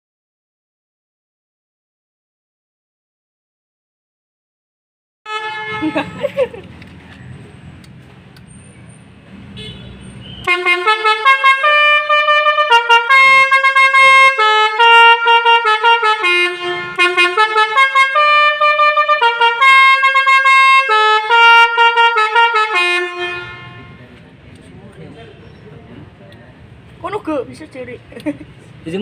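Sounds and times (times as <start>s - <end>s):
bus horn playing a tune: 5.3s - 6.6s, 9.5s - 24.2s.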